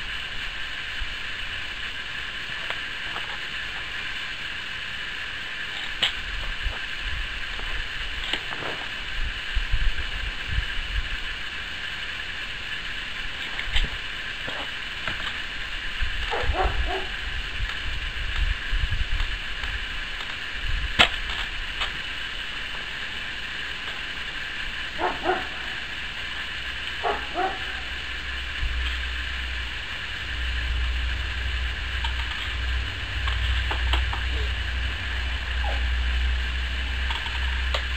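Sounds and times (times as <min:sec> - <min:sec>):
steady high hiss: 0:00.0 - 0:37.9
wind buffeting microphone: 0:09.0 - 0:11.3, 0:15.9 - 0:21.7
dog barking: 0:16.3 - 0:17.2, 0:25.0 - 0:25.7, 0:27.0 - 0:27.8.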